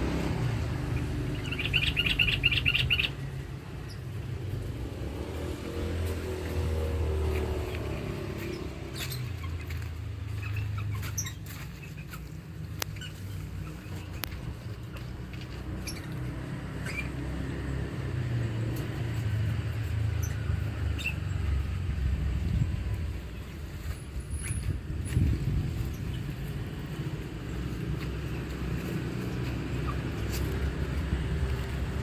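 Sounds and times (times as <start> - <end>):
lovebirds chirping: 0.8 - 4.1.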